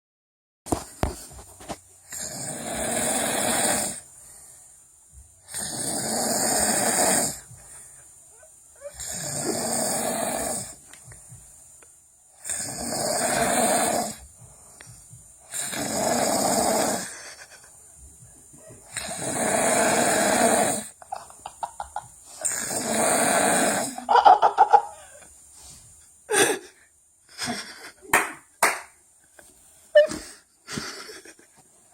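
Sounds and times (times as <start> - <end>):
loud snoring: 2.1 - 4.0, 5.5 - 7.5, 8.8 - 10.8, 12.4 - 14.2, 15.5 - 17.2, 18.9 - 21.0, 22.4 - 24.1.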